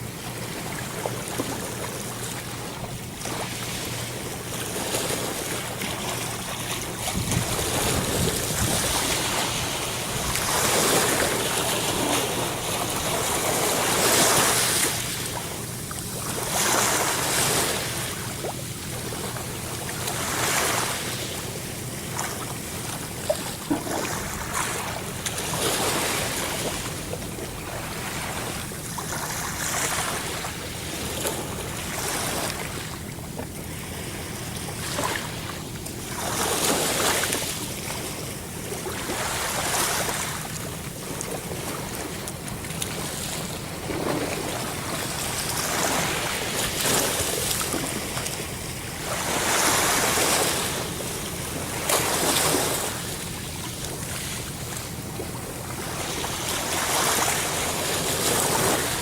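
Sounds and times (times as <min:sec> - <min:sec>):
ocean waves breaking on shore: 0:00.0 - 0:59.0.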